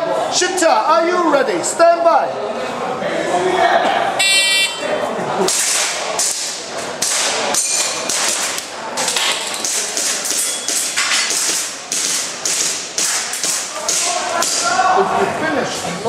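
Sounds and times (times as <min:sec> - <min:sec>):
airsoft pistol shots: 0:05.5 - 0:08.6.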